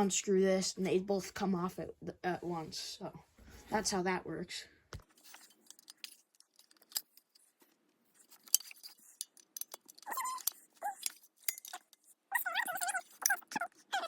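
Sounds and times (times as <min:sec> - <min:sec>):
metallic clicks of screws and tools: 0:05.3 - 0:07.5, 0:08.2 - 0:13.6
high wavering squeaks: 0:10.0 - 0:14.0.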